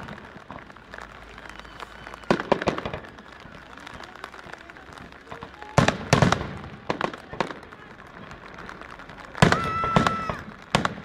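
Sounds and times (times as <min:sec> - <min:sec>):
firework crackling: 0:00.0 - 0:11.0
firework bang: 0:05.0 - 0:08.4, 0:09.3 - 0:11.0.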